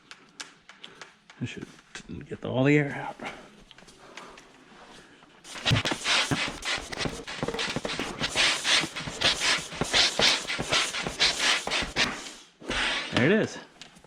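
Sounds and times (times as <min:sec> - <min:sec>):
hand pump strokes: 0:05.5 - 0:13.0.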